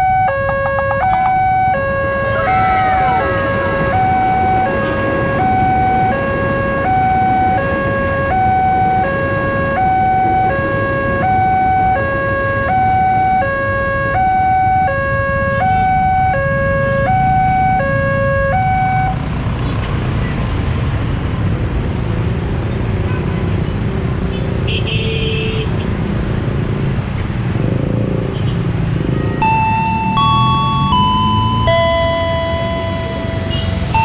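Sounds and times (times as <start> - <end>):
two-tone level crossing alarm: 0.0 - 19.2, 29.0 - 34.0
road traffic noise: 0.0 - 34.0.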